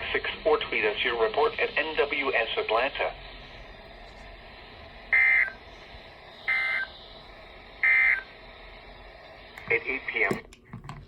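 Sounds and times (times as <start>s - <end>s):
faint radio hiss: 0.0s - 11.0s
short data bursts: 5.1s - 5.6s, 6.4s - 7.2s, 7.8s - 8.4s.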